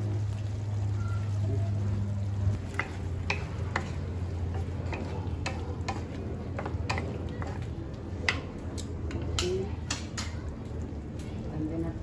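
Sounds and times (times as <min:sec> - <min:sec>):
spatula scraping a pan: 0:02.7 - 0:07.6.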